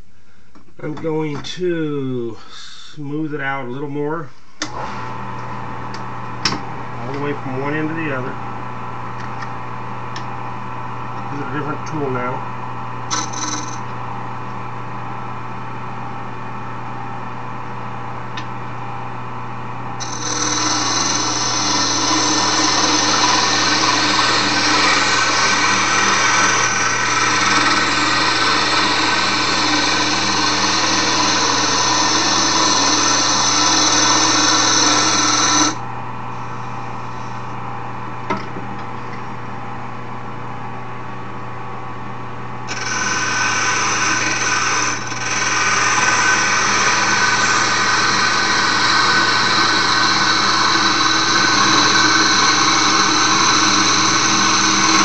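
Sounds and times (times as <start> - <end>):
wood lathe motor hum: 13.1 - 14.0, 20.0 - 35.8, 42.7 - 55.0
turning tool scraping wood: 20.0 - 35.8, 42.7 - 55.0.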